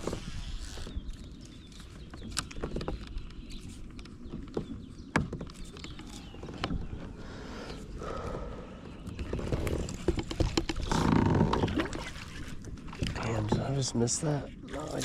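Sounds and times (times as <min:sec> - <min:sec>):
sharp knocks and clicks: 0:02.2 - 0:06.8, 0:09.2 - 0:11.8.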